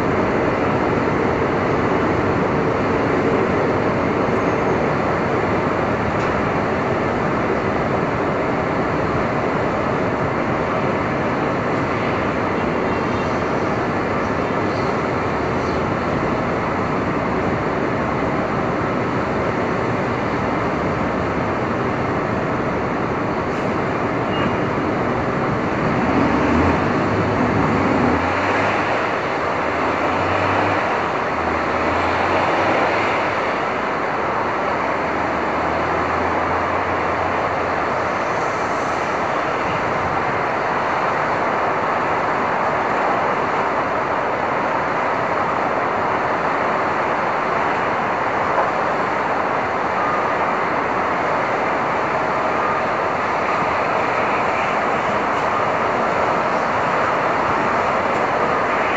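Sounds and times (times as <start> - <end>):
heavy vehicle engine rumble: 0.0 - 58.9
road traffic noise: 0.0 - 58.9.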